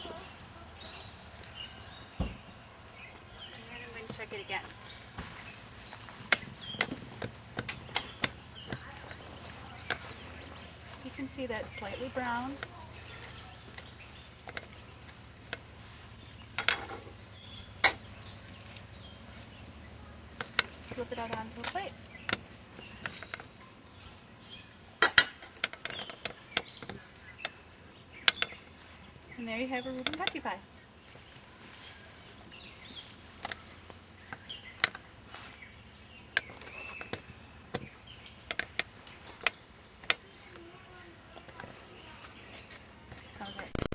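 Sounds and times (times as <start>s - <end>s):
faint bird chirps: 25.8s - 43.9s
sharp clicks and snaps: 42.7s - 43.9s.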